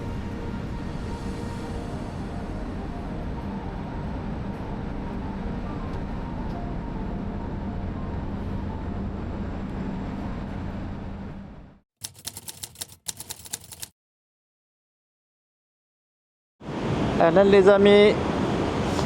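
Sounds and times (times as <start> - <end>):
low engine drone with hum: 0.0 - 11.8
rapid sharp clicks: 12.0 - 13.9.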